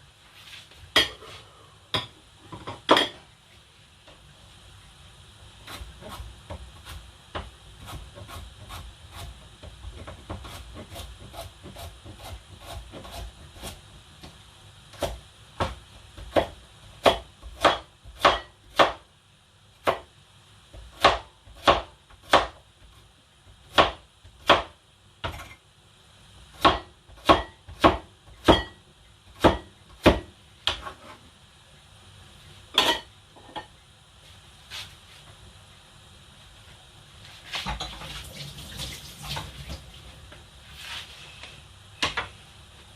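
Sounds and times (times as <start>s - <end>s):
knife chopping on wooden board: 15.0s - 19.0s, 20.8s - 22.6s, 23.7s - 25.4s, 26.6s - 28.8s, 29.4s - 30.9s.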